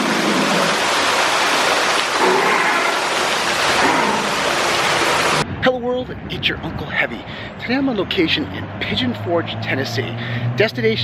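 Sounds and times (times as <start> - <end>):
water rushing: 0.0 - 5.4.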